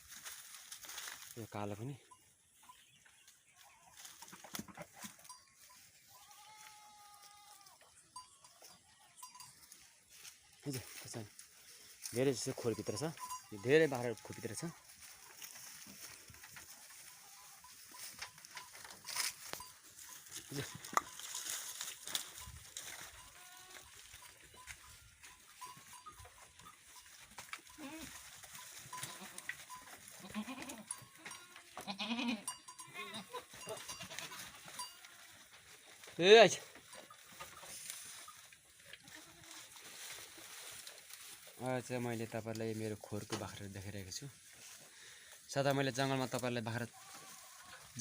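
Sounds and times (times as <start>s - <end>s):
young goat bleating: 6.1s - 7.9s, 23.2s - 24.0s, 27.7s - 28.2s, 28.9s - 29.6s, 30.2s - 35.1s, 39.0s - 39.7s, 46.9s - 48.0s
small knocks and rustles: 14.3s - 31.9s, 33.5s - 41.6s.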